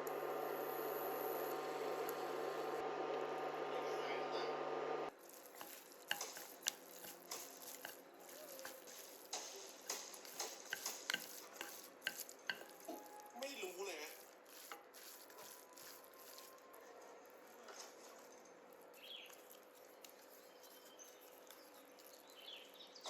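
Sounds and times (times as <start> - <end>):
utensil stirring in a pot: 5.1 - 22.9.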